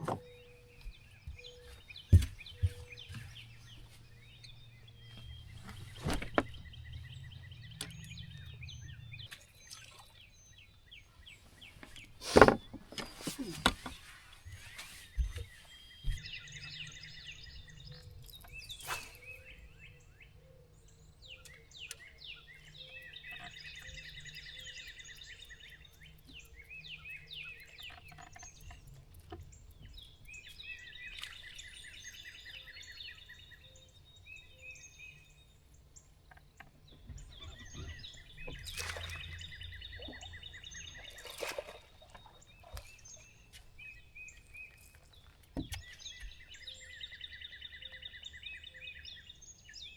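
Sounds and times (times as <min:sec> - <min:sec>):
songbirds singing trilled notes: 0:00.0 - 0:49.9.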